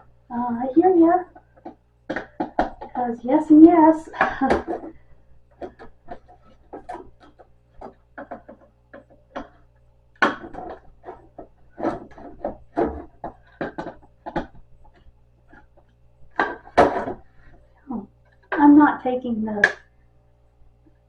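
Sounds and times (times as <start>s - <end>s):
wooden parts clicking and knocking: 4.2s - 17.6s.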